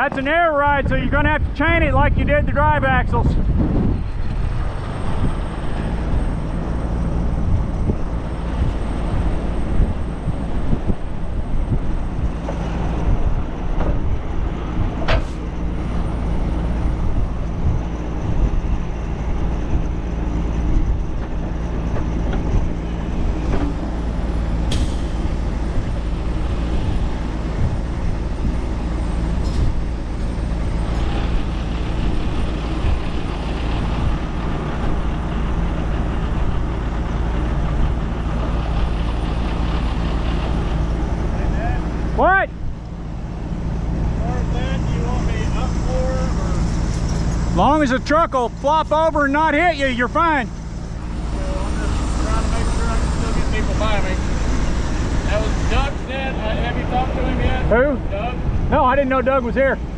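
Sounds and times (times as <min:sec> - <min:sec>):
wind buffeting microphone: 0:00.0 - 0:48.8, 0:49.9 - 0:59.9
diesel truck engine running: 0:00.0 - 0:59.9.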